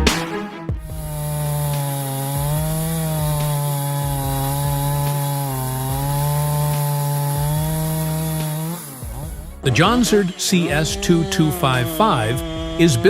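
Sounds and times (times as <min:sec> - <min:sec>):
chainsaw cutting wood: 0:00.0 - 0:13.0.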